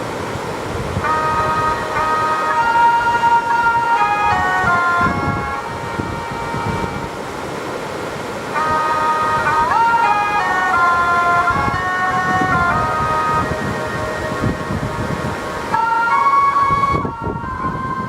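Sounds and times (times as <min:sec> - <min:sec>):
melody of held notes: 0:01.0 - 0:07.2, 0:08.5 - 0:18.0
low rumbling noise: 0:10.8 - 0:15.8.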